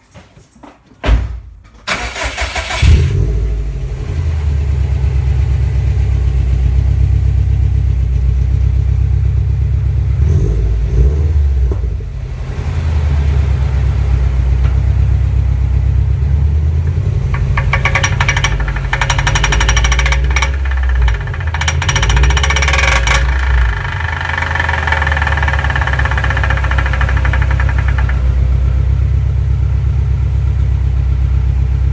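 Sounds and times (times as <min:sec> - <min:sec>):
car engine cranking and running: 0:01.9 - 0:31.9
fast rattle: 0:16.7 - 0:29.2.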